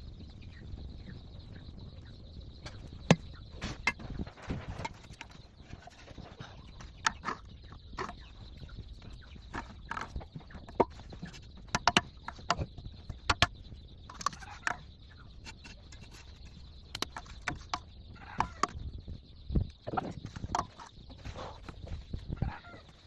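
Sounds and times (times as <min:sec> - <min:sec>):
tools and pipe fittings knocking: 0:02.7 - 0:08.3, 0:09.0 - 0:13.5, 0:14.1 - 0:14.8, 0:15.4 - 0:17.8, 0:18.4 - 0:18.8, 0:19.9 - 0:22.0.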